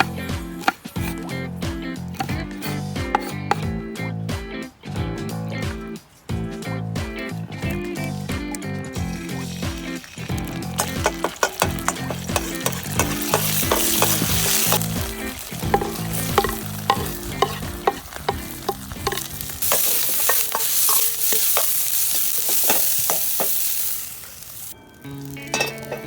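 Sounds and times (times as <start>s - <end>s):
utensil scraping a pan: 2.2s - 3.6s, 10.7s - 23.9s
food sizzling: 7.2s - 26.0s.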